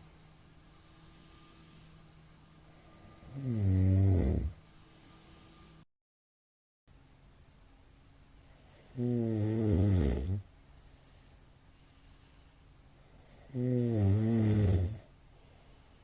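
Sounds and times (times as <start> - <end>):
faint breathing: 0.0 - 3.6, 4.5 - 5.8, 8.3 - 9.0, 10.6 - 13.7, 14.9 - 16.0
man snoring: 2.7 - 4.6, 8.7 - 10.5, 13.2 - 15.1.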